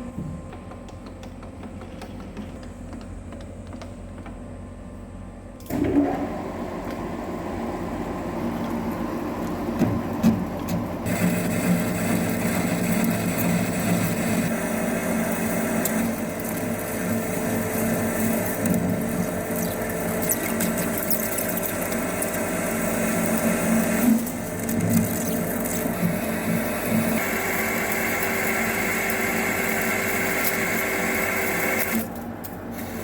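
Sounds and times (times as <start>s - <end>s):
metal lathe running: 10.5s - 32.1s.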